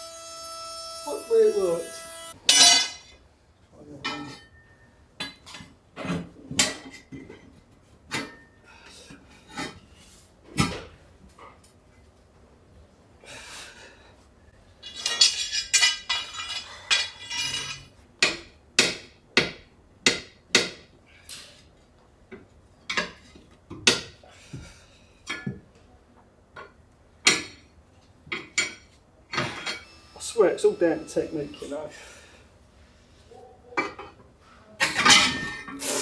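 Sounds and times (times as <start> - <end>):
metal tools scraping and rattling: 2.5 - 3.1, 14.7 - 18.0, 34.8 - 35.7.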